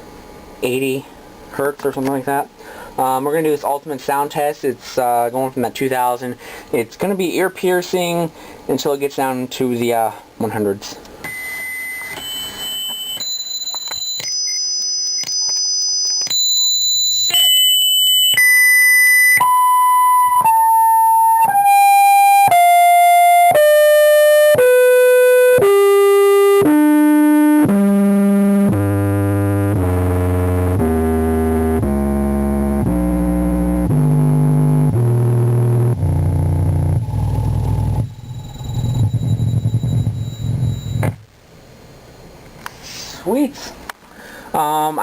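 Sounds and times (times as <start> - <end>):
subwoofer test tones: 11.2 - 41.4.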